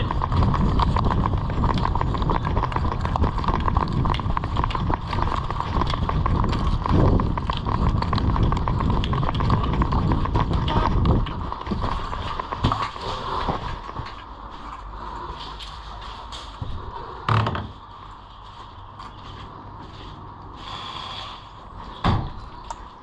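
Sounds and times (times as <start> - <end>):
wind rumble on microphone: 0.0 - 14.2.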